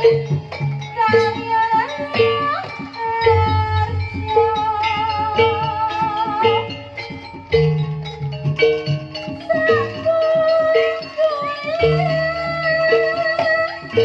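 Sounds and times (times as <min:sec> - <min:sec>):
sliding vibrato lead melody: 0:00.0 - 0:14.0
low drum pulse: 0:03.2 - 0:05.8.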